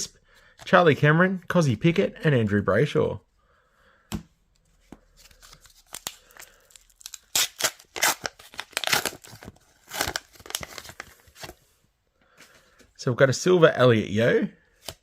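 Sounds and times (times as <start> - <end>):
wrapper tearing and crinkling: 5.3 - 11.5.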